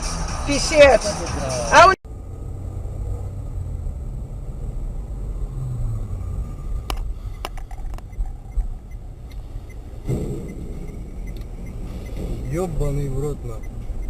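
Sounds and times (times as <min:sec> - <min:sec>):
car engine and road rumble: 0:00.0 - 0:14.0
sharp clicks: 0:06.8 - 0:12.6.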